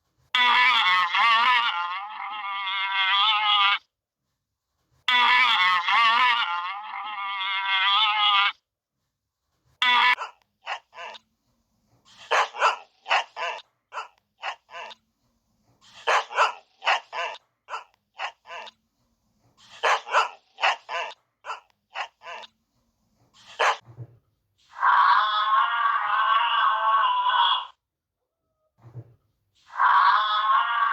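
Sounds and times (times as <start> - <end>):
dog barking: 10.1 - 11.2, 12.1 - 15.0, 15.9 - 18.7, 19.6 - 22.5, 23.4 - 23.8.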